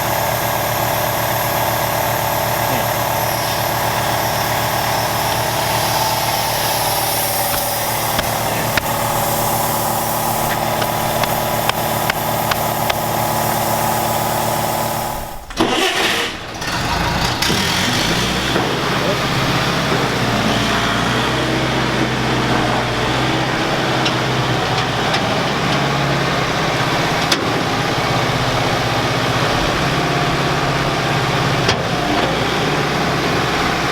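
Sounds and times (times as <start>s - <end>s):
engine idling: 0.0s - 33.9s
sharp clicks: 5.3s - 13.1s.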